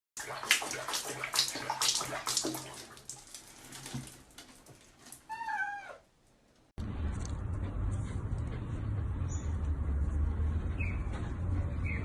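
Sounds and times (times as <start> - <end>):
water splashing: 0.2 - 5.4
cat meowing: 5.3 - 6.0.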